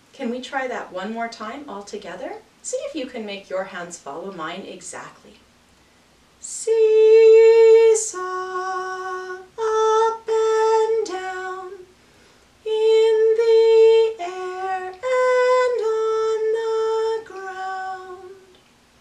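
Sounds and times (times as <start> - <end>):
woman singing unaccompanied: 0.2 - 5.4, 6.4 - 12.0, 12.6 - 18.6.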